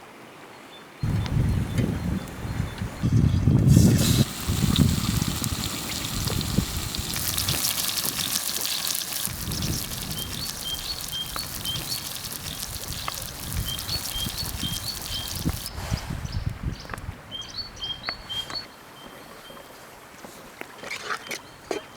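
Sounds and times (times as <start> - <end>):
steady hiss: 1.0 - 16.0
bird chirping: 5.4 - 18.7.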